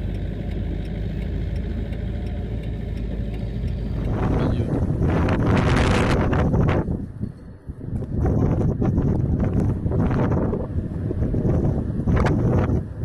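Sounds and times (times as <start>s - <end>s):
steady low rumble: 0.0s - 13.0s
strong wind gusts buffeting microphone: 3.1s - 13.0s.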